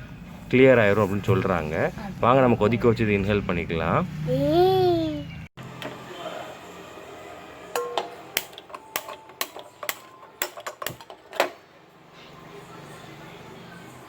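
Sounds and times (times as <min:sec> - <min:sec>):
metal pot and utensils clinking: 0:07.7 - 0:11.6.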